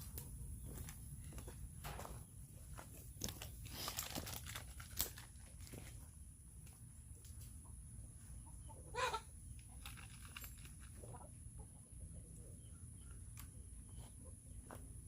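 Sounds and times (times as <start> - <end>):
chickens clucking: 7.4 - 9.8
loud chicken call: 8.9 - 9.3.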